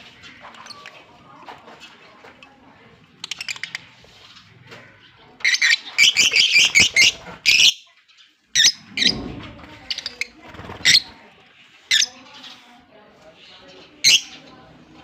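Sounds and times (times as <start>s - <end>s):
lovebirds chirping: 3.2s - 15.0s.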